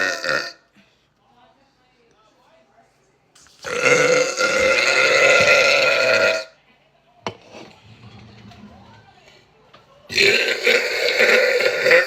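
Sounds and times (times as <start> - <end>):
woman burping: 0.0 - 0.7, 3.7 - 6.6, 10.1 - 12.0.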